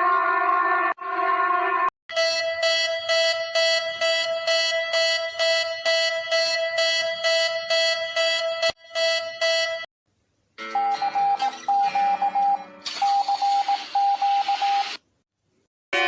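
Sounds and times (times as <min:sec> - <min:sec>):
multi-tone alarm: 0:02.1 - 0:09.9, 0:10.7 - 0:15.0.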